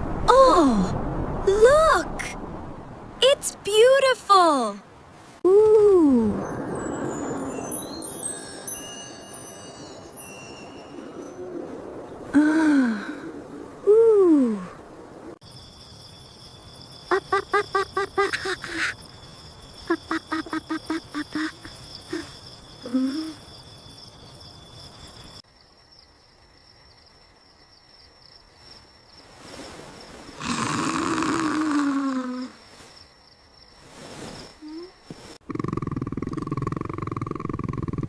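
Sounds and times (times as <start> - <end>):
crickets chirring: 6.4 - 12.1, 15.1 - 38.0.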